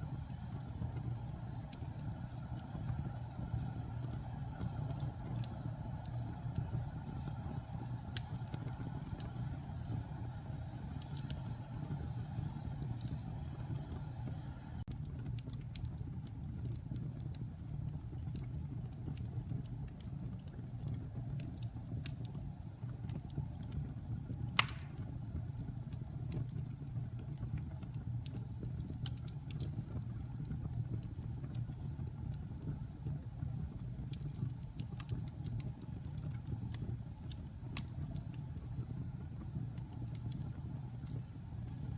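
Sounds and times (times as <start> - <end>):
wood fire crackling: 0.0 - 41.9
loud fire pop: 24.6 - 25.2.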